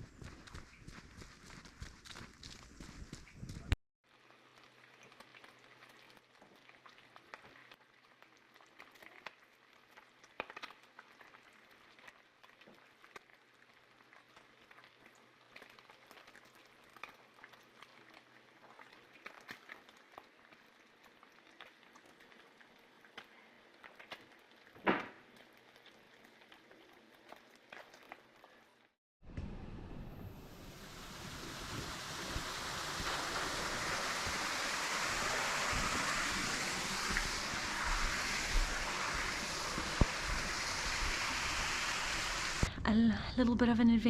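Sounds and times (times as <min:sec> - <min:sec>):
water pattering and trickling: 0:00.0 - 0:28.9, 0:30.6 - 0:42.7
small drips and splashes: 0:04.0 - 0:29.0, 0:30.9 - 0:42.7
loud water splash: 0:30.3 - 0:42.7.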